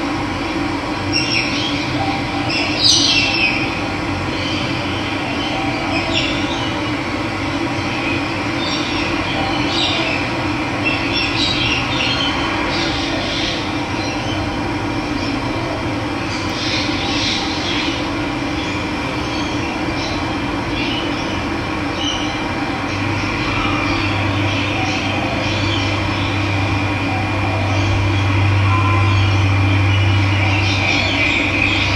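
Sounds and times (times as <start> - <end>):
birds chirping: 1.1 - 3.7.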